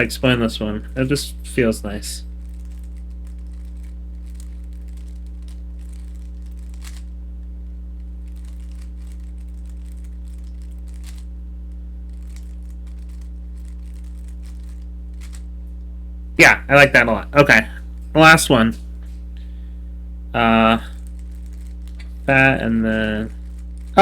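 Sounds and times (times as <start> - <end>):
electrical hum: 0.0 - 24.0
plastic cube clicking: 2.6 - 7.1, 8.3 - 11.2, 12.1 - 15.4.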